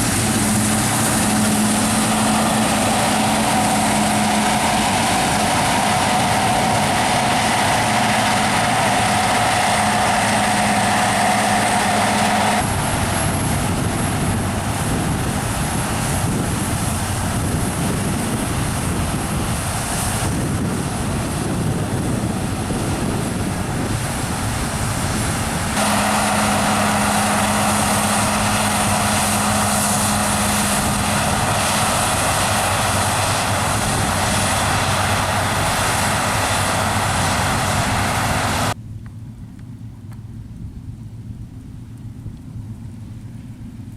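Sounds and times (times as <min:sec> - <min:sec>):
combine harvester drone: 0:00.0 - 0:43.9.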